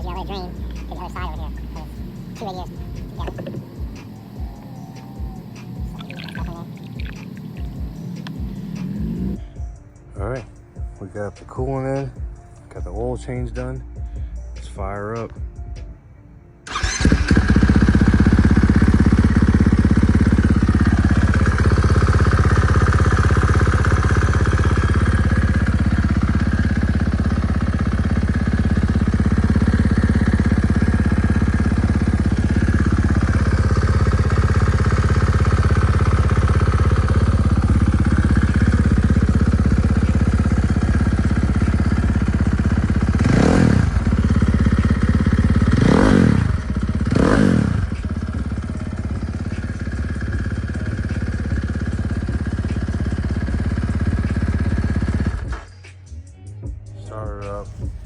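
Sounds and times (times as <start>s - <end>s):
dirt bike engine idling: 0.0s - 15.5s, 16.7s - 58.0s
engine rev blip: 0.6s - 9.4s, 29.1s - 48.3s.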